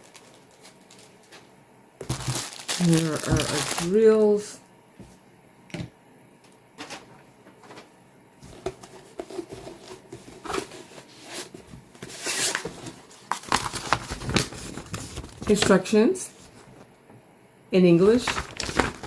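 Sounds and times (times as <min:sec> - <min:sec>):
packaging rustling and crinkling: 0:00.0 - 0:04.4, 0:08.4 - 0:15.8, 0:18.0 - 0:19.0.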